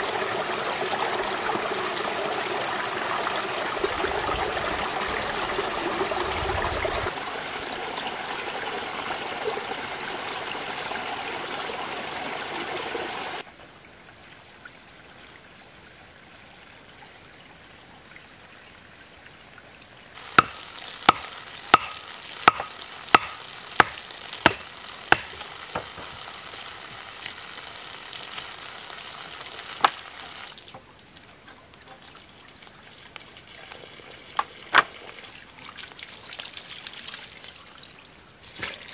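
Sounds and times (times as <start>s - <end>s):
flowing water: 0.0s - 38.9s
light hiss: 20.2s - 38.9s.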